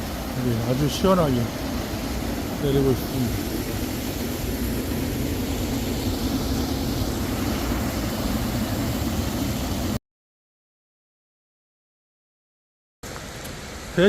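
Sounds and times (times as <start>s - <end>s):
waterfall rushing into pool: 0.0s - 10.0s, 13.0s - 14.0s.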